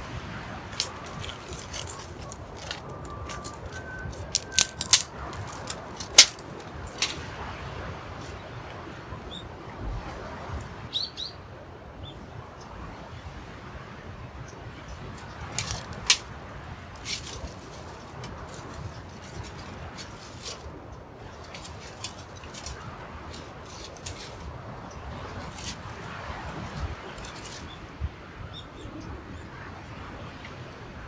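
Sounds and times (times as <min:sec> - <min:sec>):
sharp clicks and knocks: 0:00.8 - 0:07.3, 0:15.6 - 0:16.2, 0:17.0 - 0:20.7.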